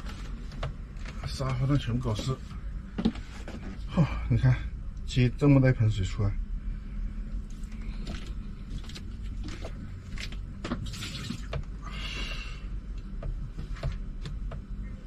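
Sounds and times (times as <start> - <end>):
steady low hum: 0.0 - 15.0
water sloshing and pouring: 10.6 - 11.7.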